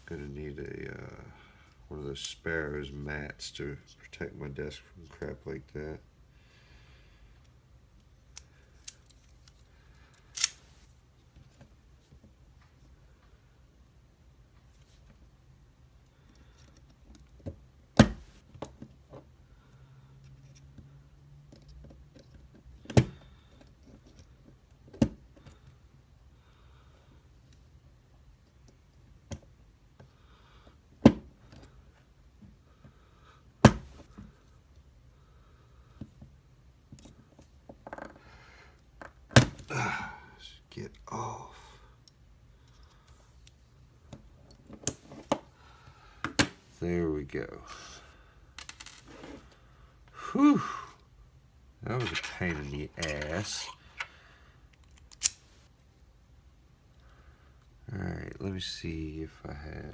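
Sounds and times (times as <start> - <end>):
padlock sharp snap: 55.1 - 55.4.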